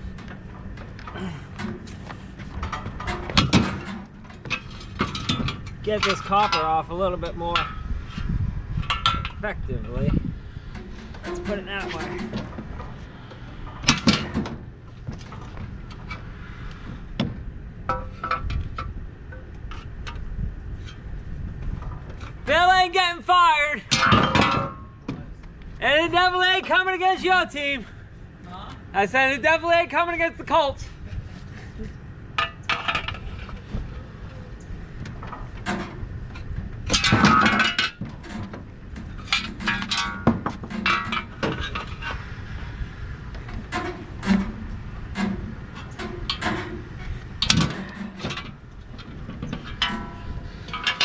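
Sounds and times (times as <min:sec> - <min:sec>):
hand tool clanking on metal: 0:00.0 - 0:06.9, 0:08.8 - 0:16.2, 0:23.9 - 0:25.0, 0:35.2 - 0:42.4, 0:43.2 - 0:51.0
ringing metal-on-metal scrape: 0:49.5 - 0:51.0
metal clink: 0:49.6 - 0:51.0.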